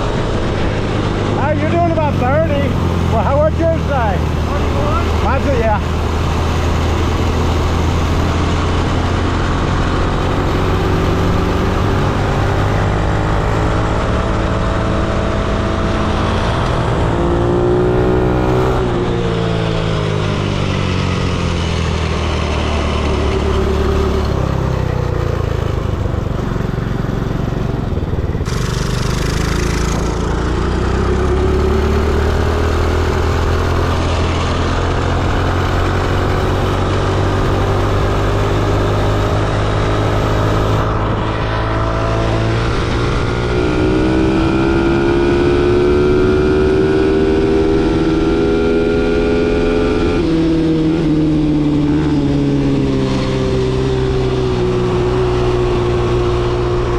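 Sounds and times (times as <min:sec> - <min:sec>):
minibike engines revving: 0:01.1 - 0:15.2, 0:21.8 - 0:48.4.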